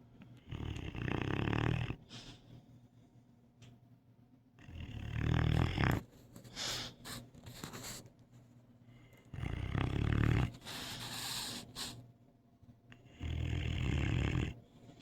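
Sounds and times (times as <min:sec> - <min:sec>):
dog snoring: 0:00.4 - 0:02.1, 0:04.6 - 0:08.0, 0:09.3 - 0:12.0, 0:13.0 - 0:15.0
soft airy breaths: 0:02.0 - 0:03.5, 0:05.6 - 0:12.1.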